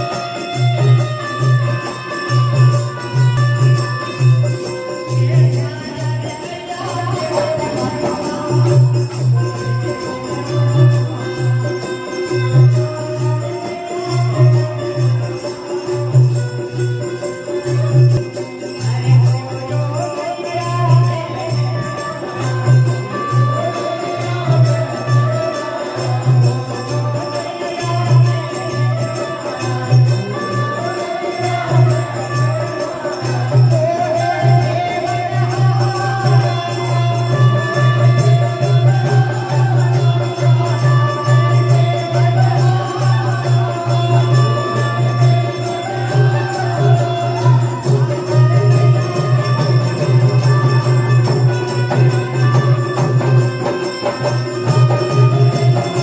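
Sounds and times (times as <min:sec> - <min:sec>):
steady drum beat: 0:00.0 - 0:19.9
tambourine jingles: 0:00.0 - 0:56.0.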